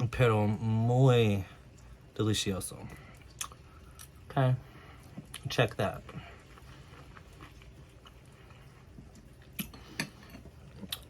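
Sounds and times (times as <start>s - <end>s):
person chewing food: 2.8s - 11.0s.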